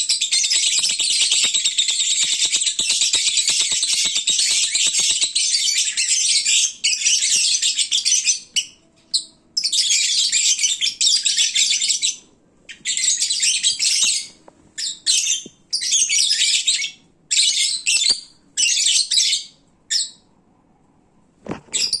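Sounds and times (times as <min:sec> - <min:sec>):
lovebirds twittering: 0:00.2 - 0:08.4.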